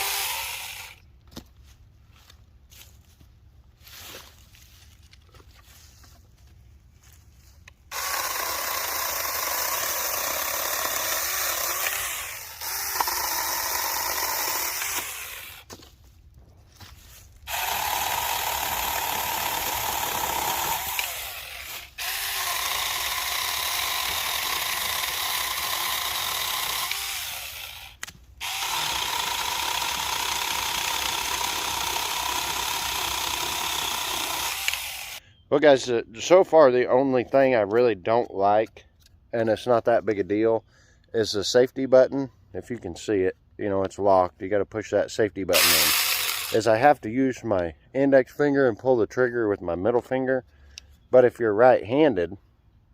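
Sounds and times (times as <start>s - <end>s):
electric chainsaw whining: 0.0s - 1.0s, 7.9s - 15.8s, 17.4s - 35.2s, 45.5s - 46.8s.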